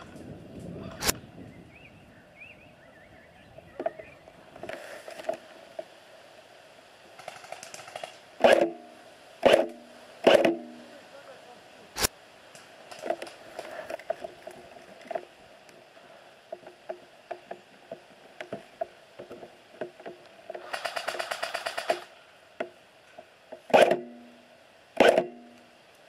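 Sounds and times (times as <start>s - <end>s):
airsoft gun shots: 7.2s - 8.8s, 9.4s - 10.8s, 20.6s - 22.1s, 23.7s - 24.2s, 25.0s - 25.6s
full-auto burst: 7.2s - 8.8s, 20.6s - 22.1s.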